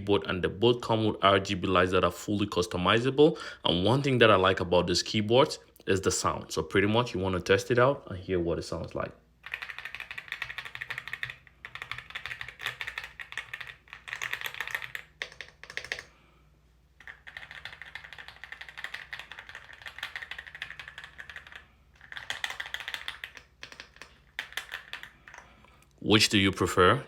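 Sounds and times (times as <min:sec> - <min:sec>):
mechanical keyboard keystroke clacks: 0:09.5 - 0:16.1, 0:17.0 - 0:25.4.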